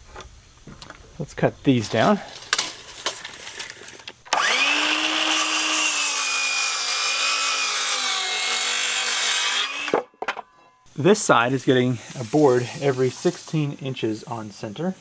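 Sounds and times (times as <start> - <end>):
electric saw cutting wood: 4.3 - 10.1.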